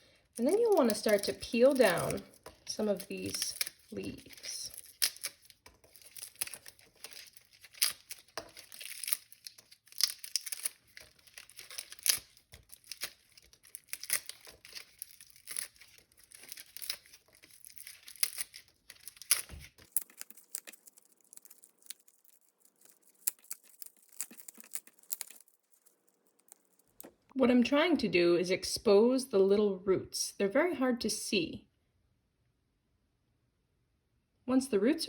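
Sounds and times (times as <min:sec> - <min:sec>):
leaves peeled off pineapple: 0:00.0 - 0:27.1.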